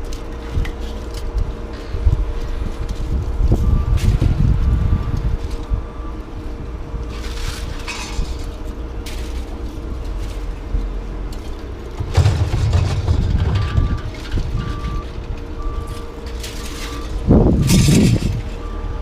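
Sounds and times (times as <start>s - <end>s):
heavy vehicle engine running: 0.0s - 19.0s
reversing alarm beeping: 3.6s - 7.1s, 12.0s - 19.0s
loud rattling clatter: 11.9s - 15.3s.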